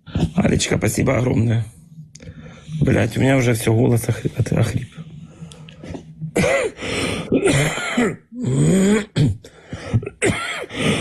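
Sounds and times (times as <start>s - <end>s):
man coughing: 6.3s - 11.0s.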